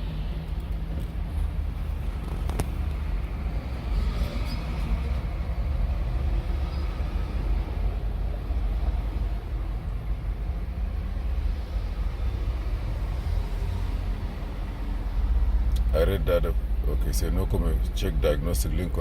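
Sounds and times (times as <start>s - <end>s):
motor vehicle rumble: 0.0s - 19.0s.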